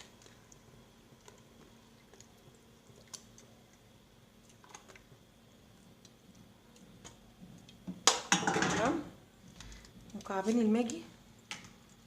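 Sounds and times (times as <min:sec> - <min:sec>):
kitchen clicks and taps: 0:07.9 - 0:09.0.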